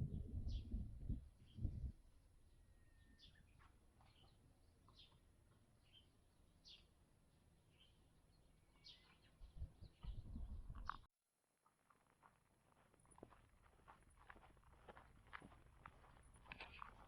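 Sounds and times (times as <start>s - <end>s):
faint bird chirps: 2.5s - 5.2s, 7.7s - 11.1s.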